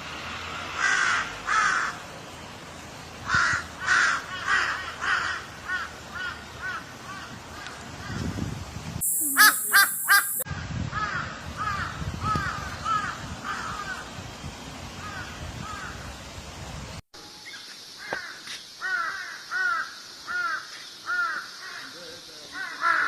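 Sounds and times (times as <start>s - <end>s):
crows cawing: 0.8s - 2.0s, 3.3s - 8.2s, 9.4s - 10.4s, 18.0s - 23.0s.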